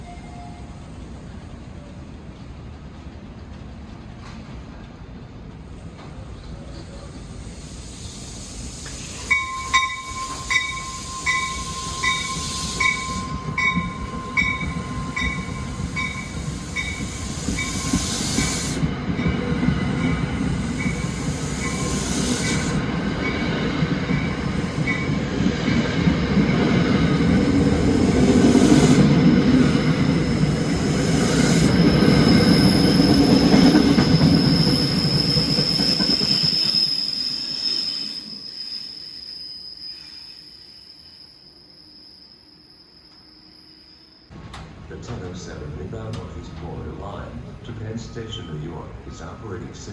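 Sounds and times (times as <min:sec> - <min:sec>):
train rumble: 0:00.0 - 0:37.0, 0:44.3 - 0:49.9
high-pitched wheel squeal: 0:08.9 - 0:18.8, 0:27.9 - 0:44.3
bell striking: 0:09.3 - 0:17.0.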